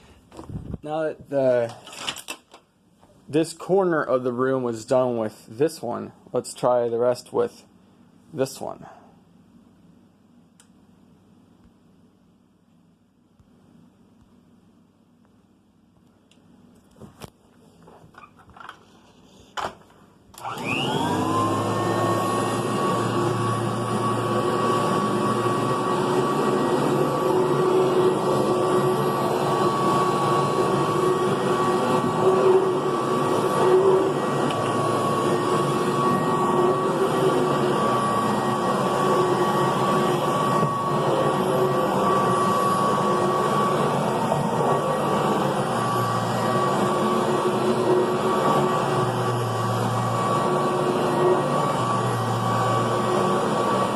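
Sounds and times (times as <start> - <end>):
vacuum cleaner motor whine: 19.6 - 53.9.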